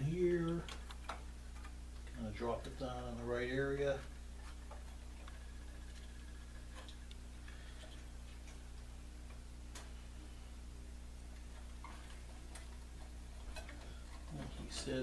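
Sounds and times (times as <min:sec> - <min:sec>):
low electrical hum: 0:00.0 - 0:15.0
faint clicks of small parts: 0:00.4 - 0:03.3, 0:11.3 - 0:15.0.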